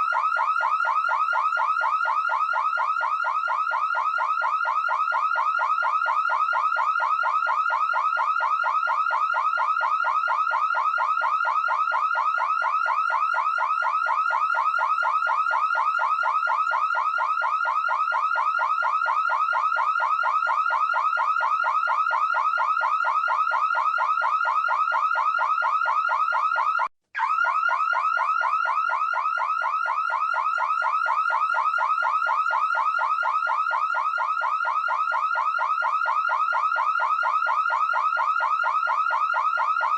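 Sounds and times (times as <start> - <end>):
alarm siren chirping: 0.0 - 39.9.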